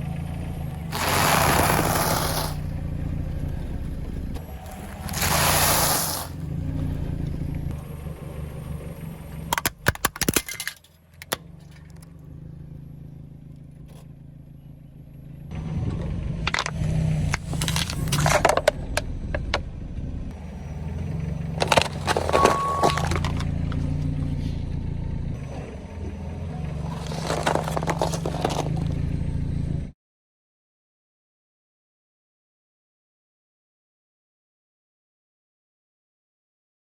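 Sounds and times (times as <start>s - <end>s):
car engine running low: 0.0s - 29.9s
tyres crushing crunchy objects: 0.9s - 2.7s, 4.4s - 6.4s, 16.5s - 18.8s, 21.5s - 23.6s, 26.8s - 29.1s.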